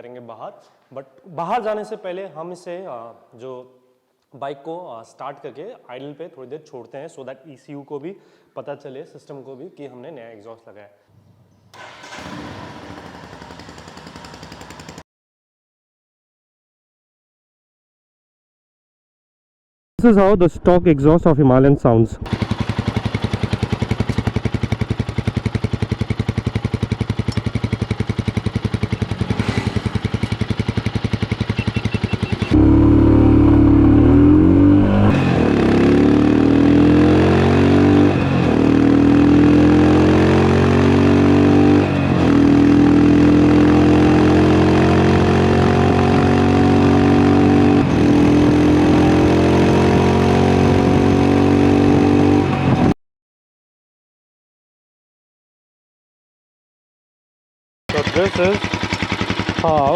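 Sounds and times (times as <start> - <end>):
motorcycle engine idling and revving: 11.8 - 15.0, 22.3 - 52.9, 57.9 - 59.9.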